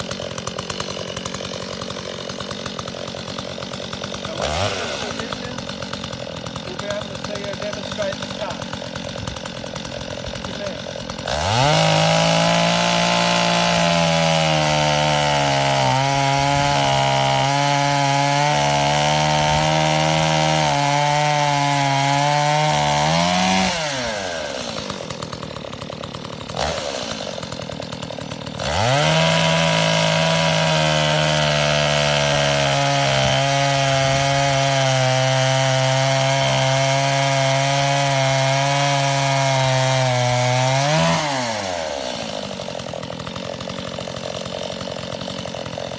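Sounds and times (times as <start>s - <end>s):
chainsaw revving: 0.0s - 45.9s.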